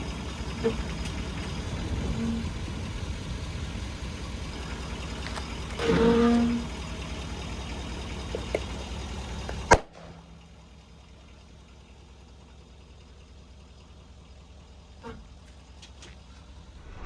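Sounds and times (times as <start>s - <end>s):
truck engine rumbling: 0.0s - 17.0s
object bursting under tire: 16.8s - 17.0s.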